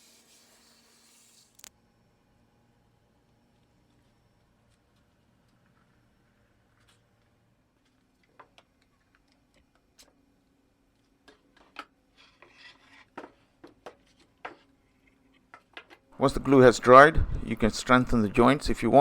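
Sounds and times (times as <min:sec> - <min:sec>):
wood scraping rub: 0:12.1 - 0:15.5.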